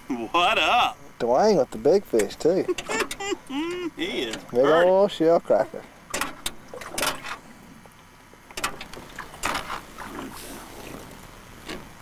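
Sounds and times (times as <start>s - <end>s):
knocks and handling in a boat: 2.2s - 4.6s, 5.5s - 12.0s.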